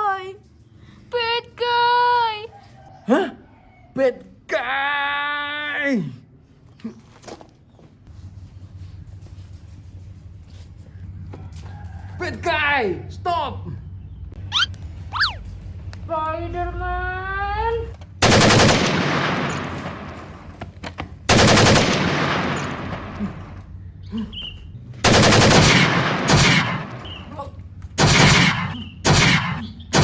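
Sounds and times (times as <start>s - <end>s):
rapid-fire gunfire bursts: 18.2s - 20.3s, 21.3s - 23.6s, 25.0s - 27.3s, 28.0s - 30.0s.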